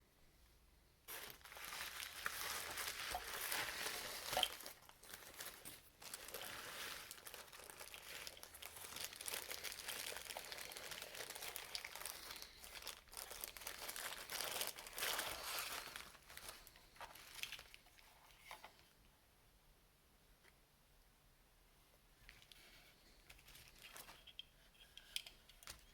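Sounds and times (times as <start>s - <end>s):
packaging crinkling and tearing: 1.1s - 17.9s.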